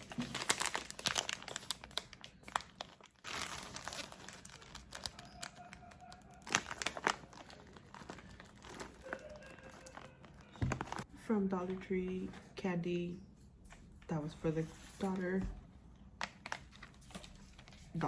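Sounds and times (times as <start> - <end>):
packaging crinkling and rustling: 0.0 - 11.1, 16.2 - 18.0.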